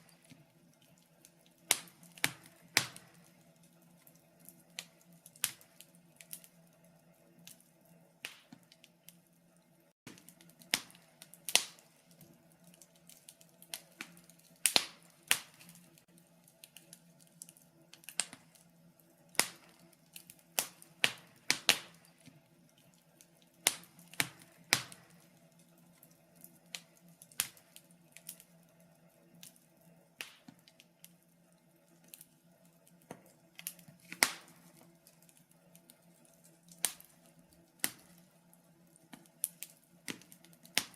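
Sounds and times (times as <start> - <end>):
faint steady hum: 0.0 - 40.9
fire crackling in a fireplace: 0.0 - 40.9.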